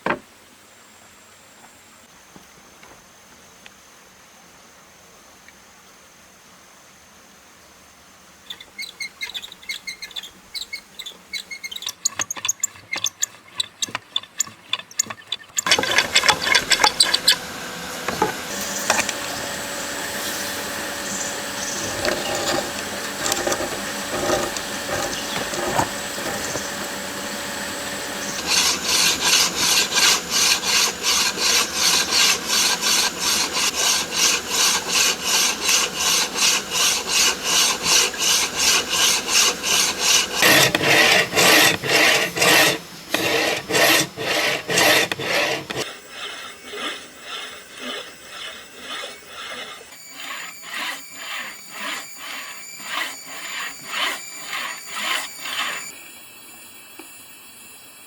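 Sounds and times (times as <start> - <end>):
hand tool rasping on wood: 8.8 - 55.9.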